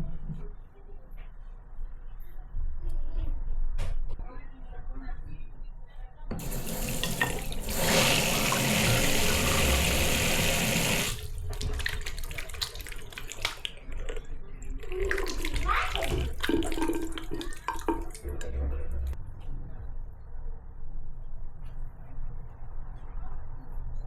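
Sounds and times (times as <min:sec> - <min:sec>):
water running from a tap: 0:06.4 - 0:14.1, 0:14.8 - 0:18.5.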